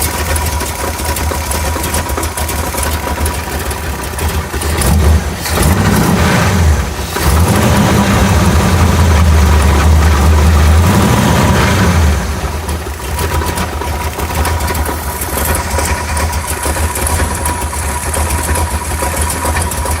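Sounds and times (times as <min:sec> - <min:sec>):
car engine idling: 0:00.0 - 0:20.0.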